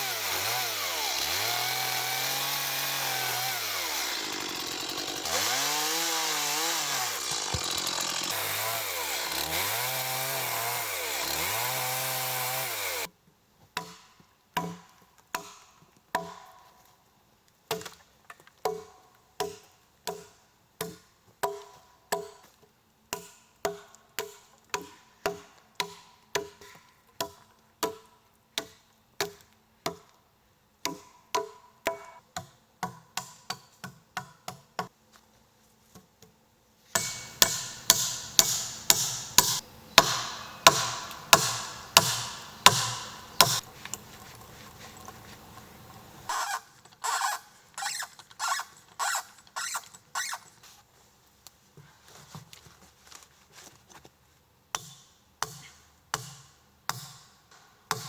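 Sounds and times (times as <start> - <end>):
hand tool blows on wood: 0.0 - 13.1.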